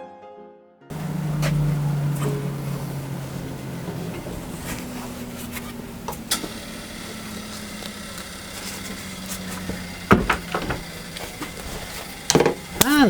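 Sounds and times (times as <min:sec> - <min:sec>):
bandsaw running: 0:00.9 - 0:13.0
loud wooden knocks: 0:03.6 - 0:13.0.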